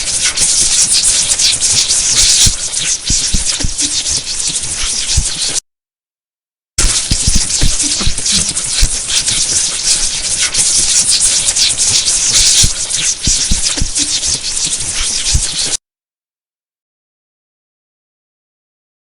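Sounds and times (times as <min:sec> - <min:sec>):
electricity crackling: 0:00.0 - 0:05.6, 0:06.8 - 0:15.8.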